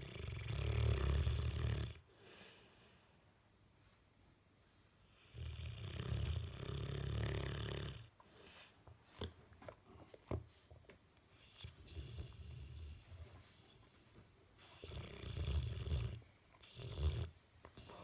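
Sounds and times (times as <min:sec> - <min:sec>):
dog snoring: 0:00.0 - 0:02.0, 0:05.1 - 0:08.1, 0:11.4 - 0:13.7, 0:14.6 - 0:18.0.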